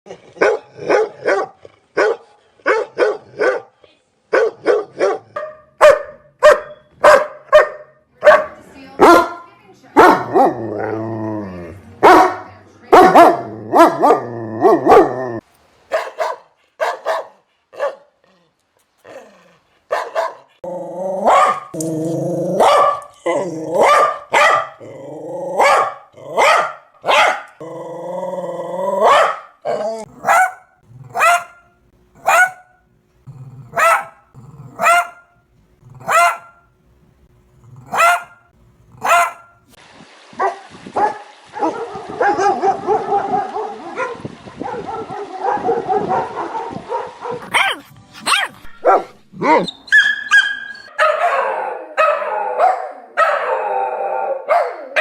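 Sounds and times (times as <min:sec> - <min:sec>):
dog barking: 0:00.4 - 0:03.7, 0:04.3 - 0:10.5, 0:12.0 - 0:15.1, 0:15.9 - 0:18.1, 0:19.9 - 0:20.5, 0:21.3 - 0:21.8, 0:22.6 - 0:23.1, 0:23.8 - 0:24.8, 0:25.6 - 0:27.5, 0:29.0 - 0:32.8, 0:33.7 - 0:36.6, 0:37.8 - 0:39.6, 0:40.4 - 0:53.7, 0:54.3 - 0:55.0
dog growling: 0:10.2 - 0:11.9, 0:18.2 - 0:19.8, 0:20.5 - 0:24.0, 0:24.8 - 0:26.5, 0:27.6 - 0:31.6, 0:33.2 - 0:35.2, 0:35.8 - 0:36.6, 0:37.5 - 0:39.5.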